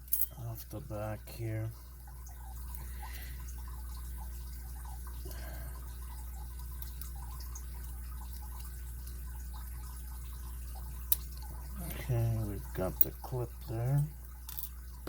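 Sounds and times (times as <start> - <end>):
small metal ticks and clicks: 6.4 - 9.6, 11.0 - 11.6, 12.9 - 14.9.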